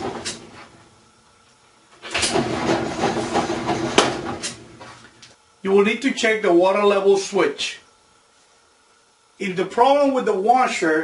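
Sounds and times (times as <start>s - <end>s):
washer motor humming: 0.0s - 5.6s
agitator drive knocking: 2.2s - 4.7s.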